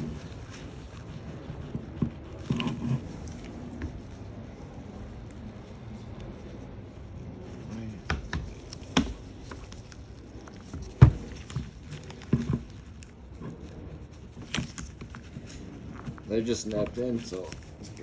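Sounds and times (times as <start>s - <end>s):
handling rustle: 0.0s - 18.0s
plastic case clicks and knocks: 8.1s - 9.8s.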